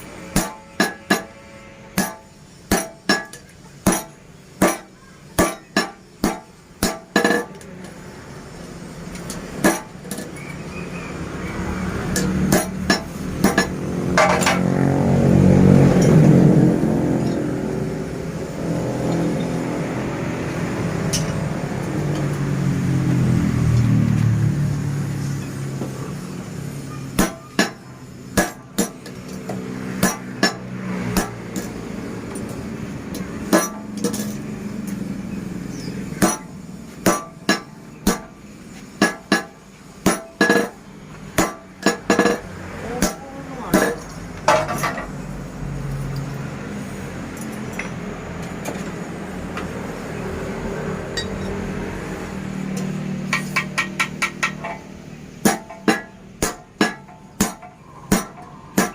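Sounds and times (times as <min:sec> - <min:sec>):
hammer striking metal: 0:00.3 - 0:07.6, 0:09.6 - 0:10.3, 0:12.1 - 0:14.9, 0:27.1 - 0:31.8, 0:33.1 - 0:34.4, 0:36.2 - 0:38.4, 0:39.0 - 0:40.8, 0:41.4 - 0:45.1, 0:52.8 - 0:58.9.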